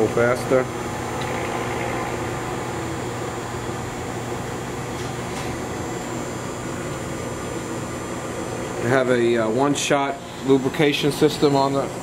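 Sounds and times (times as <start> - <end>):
electric motor hum: 0.2 - 4.9.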